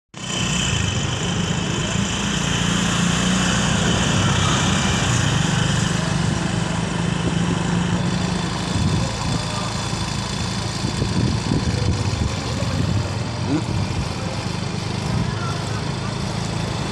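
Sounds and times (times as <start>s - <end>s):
vehicle engine running: 0.1s - 16.9s
road or wind noise: 0.2s - 16.9s.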